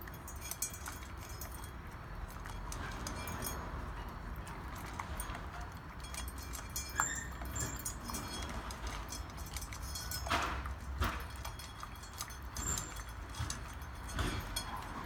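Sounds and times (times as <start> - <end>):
dog eating from a bowl: 0.0 - 15.0.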